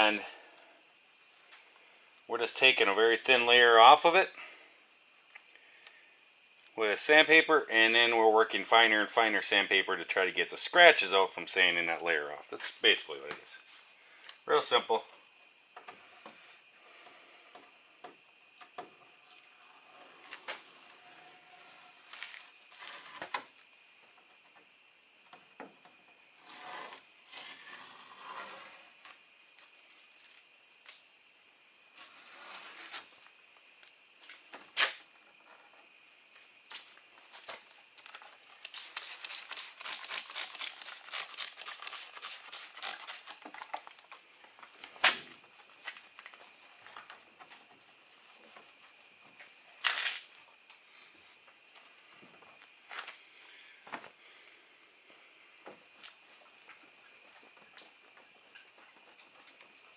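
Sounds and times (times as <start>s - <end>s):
crickets chirring: 0.0s - 59.9s
rubbing and handling noises: 37.3s - 44.2s.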